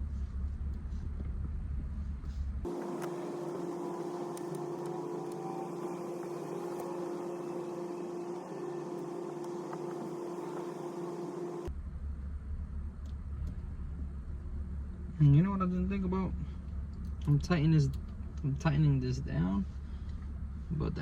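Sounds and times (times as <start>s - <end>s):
fan motor humming: 2.7s - 11.7s.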